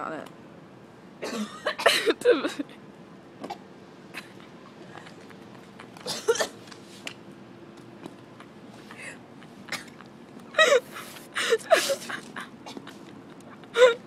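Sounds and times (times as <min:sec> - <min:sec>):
woman coughing: 0:01.2 - 0:02.7, 0:06.0 - 0:06.6, 0:11.4 - 0:12.9.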